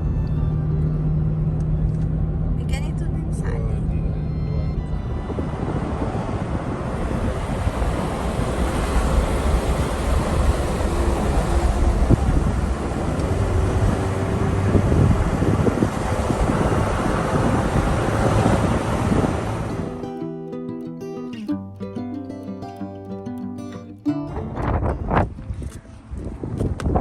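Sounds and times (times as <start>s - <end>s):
road rumble inside car: 0.0s - 19.9s
wind buffeting microphone: 0.0s - 20.1s, 24.4s - 27.0s
wind rushing: 3.7s - 20.1s.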